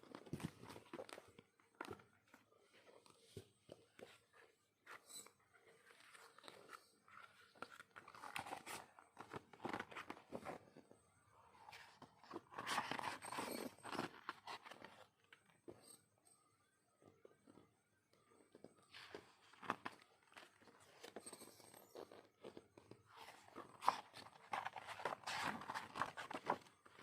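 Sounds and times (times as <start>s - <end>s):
packaging rustling and crinkling: 23.1s - 27.0s.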